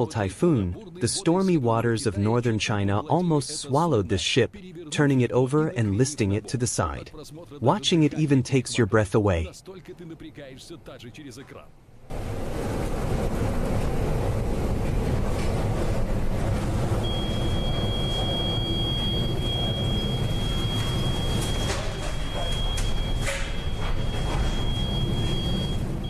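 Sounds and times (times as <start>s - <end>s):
high steady tone: 17.0s - 26.0s.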